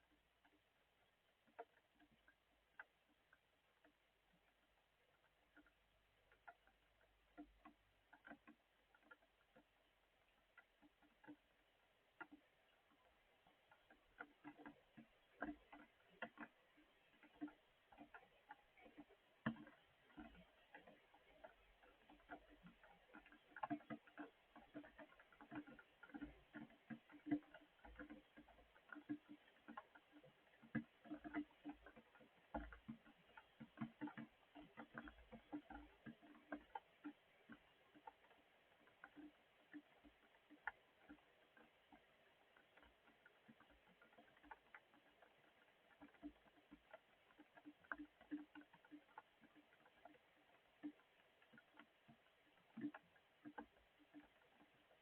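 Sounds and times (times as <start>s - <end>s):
raindrops ticking: 0.0s - 55.0s.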